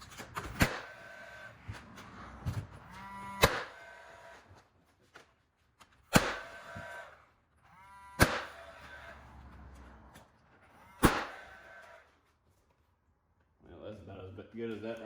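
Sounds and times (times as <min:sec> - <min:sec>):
nail gun firing: 0:00.0 - 0:04.5, 0:06.1 - 0:07.2, 0:08.1 - 0:09.2, 0:10.1 - 0:12.0.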